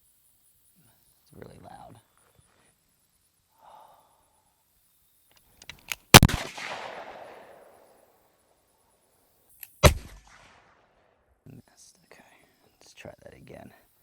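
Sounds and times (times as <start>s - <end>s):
gunshots with echo: 6.2s - 7.8s.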